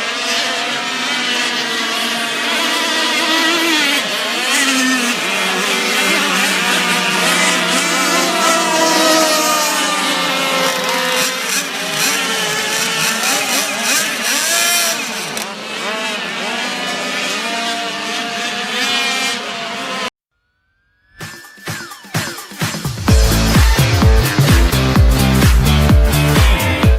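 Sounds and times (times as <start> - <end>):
model boat engines whining: 0.0 - 20.1.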